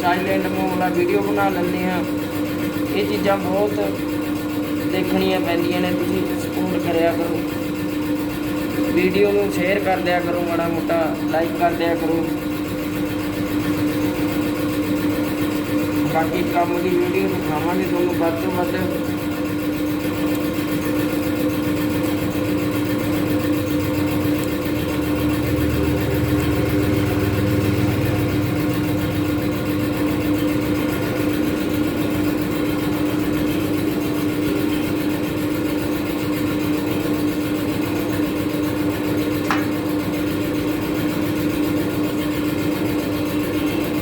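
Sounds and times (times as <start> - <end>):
machine humming: 0.0 - 44.0.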